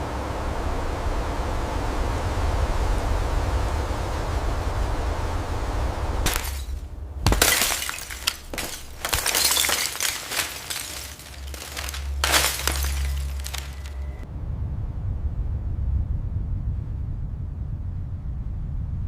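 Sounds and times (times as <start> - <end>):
glass shattering: 6.3 - 14.2.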